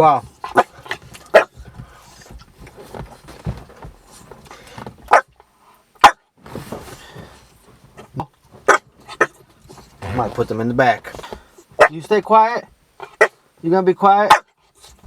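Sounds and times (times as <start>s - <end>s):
dog barking: 1.3s - 1.5s, 5.1s - 5.3s, 6.0s - 6.2s, 11.8s - 12.0s, 13.2s - 13.4s, 14.3s - 14.5s.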